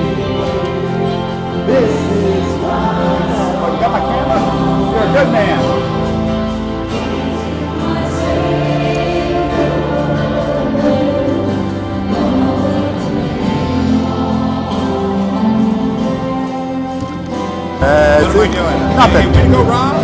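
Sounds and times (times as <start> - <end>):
congregation and choir singing hymn: 0.0 - 20.0.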